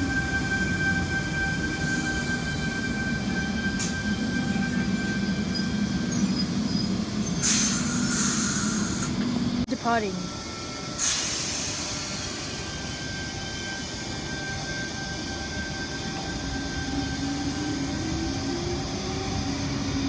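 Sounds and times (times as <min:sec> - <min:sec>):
train electrical hum: 0:00.0 - 0:20.0.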